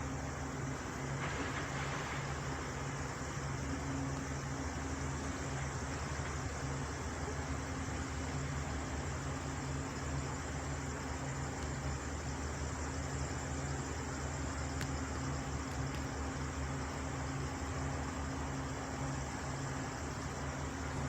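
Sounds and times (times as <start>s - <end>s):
faint clicks: 14.7s - 16.1s.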